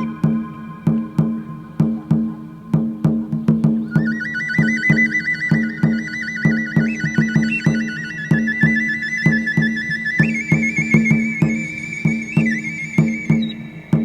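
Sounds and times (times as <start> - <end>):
steady drum beat: 0.0 - 7.8
high flute trilling: 0.0 - 14.0.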